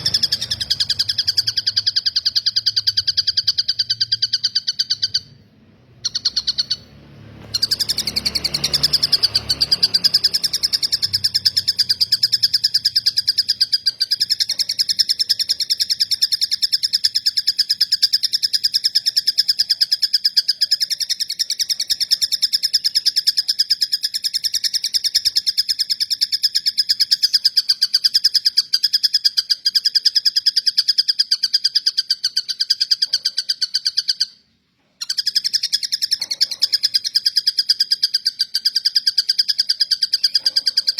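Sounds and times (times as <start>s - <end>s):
kingfisher high-pitched trill: 0.0s - 17.6s.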